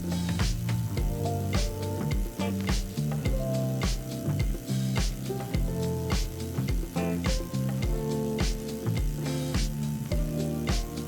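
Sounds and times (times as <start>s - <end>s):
background music with beat: 0.0s - 11.0s.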